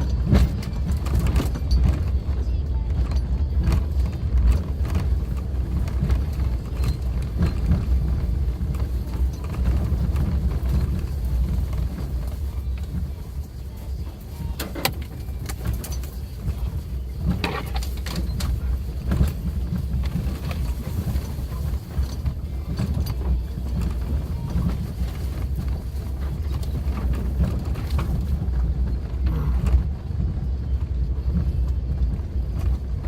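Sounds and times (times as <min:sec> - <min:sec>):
knocks and rattles: 0:00.0 - 0:13.1
engine and rough road rumble: 0:00.0 - 0:33.0.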